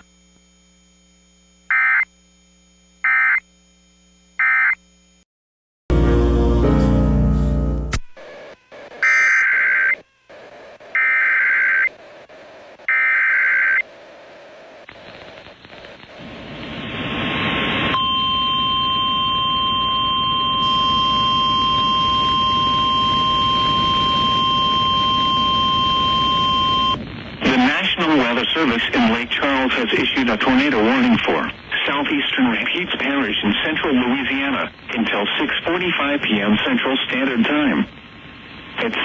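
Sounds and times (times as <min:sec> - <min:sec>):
radio hiss: 0:00.0 - 0:05.2, 0:07.9 - 0:39.0
screeching digital data tones: 0:01.7 - 0:02.1, 0:03.0 - 0:03.4, 0:04.4 - 0:04.8, 0:08.2 - 0:12.0, 0:12.9 - 0:13.9
steady warning alarm tone: 0:01.7 - 0:02.1, 0:03.0 - 0:03.4, 0:08.1 - 0:11.9, 0:18.0 - 0:27.0.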